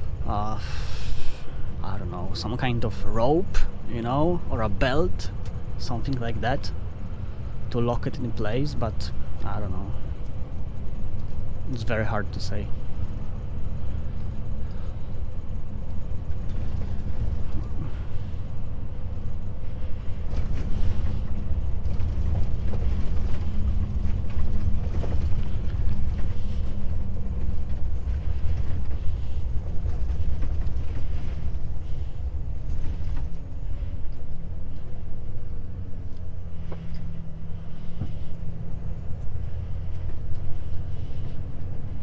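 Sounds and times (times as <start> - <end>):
truck engine droning: 0.0 - 42.0
cab creaks and knocks: 20.2 - 31.8.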